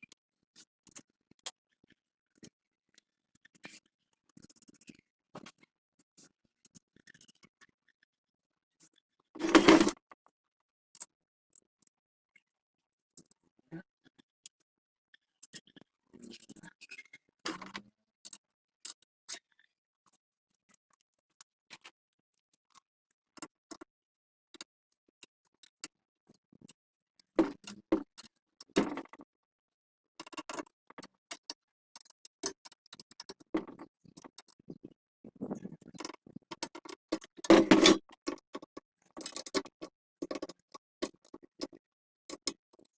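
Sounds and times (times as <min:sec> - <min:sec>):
tools and parts clicking and knocking: 0:09.4 - 0:10.0, 0:27.4 - 0:28.1, 0:28.7 - 0:29.2, 0:36.0 - 0:42.6.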